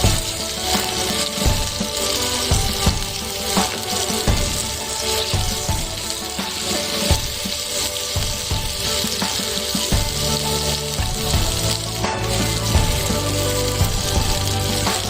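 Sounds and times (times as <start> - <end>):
background music: 0.0 - 15.0
food sizzling in hot oil: 0.0 - 15.0.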